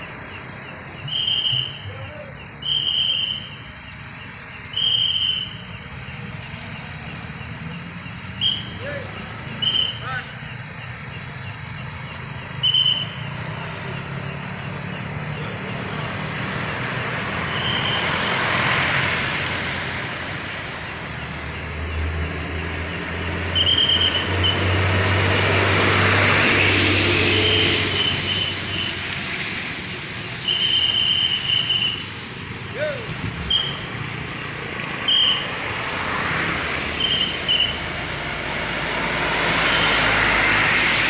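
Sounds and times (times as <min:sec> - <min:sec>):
heavy vehicle engine droning: 0:00.0 - 0:41.0
traffic on a wet road: 0:00.0 - 0:41.0
short whistle blasts: 0:01.0 - 0:03.6, 0:04.7 - 0:05.7, 0:08.4 - 0:08.9, 0:09.6 - 0:10.2, 0:12.6 - 0:13.2, 0:17.5 - 0:18.2, 0:23.6 - 0:24.7, 0:30.4 - 0:32.1, 0:32.7 - 0:33.9, 0:35.0 - 0:35.6, 0:37.0 - 0:37.8.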